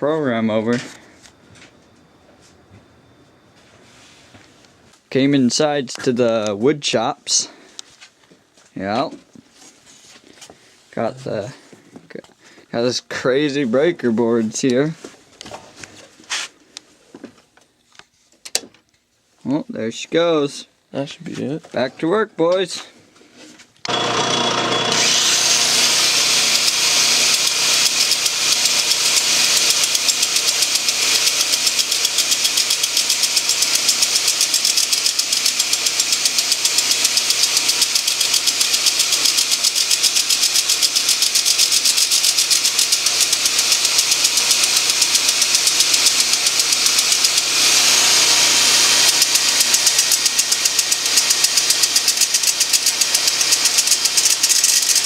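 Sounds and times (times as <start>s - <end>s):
small engine running: 23.9s - 55.0s.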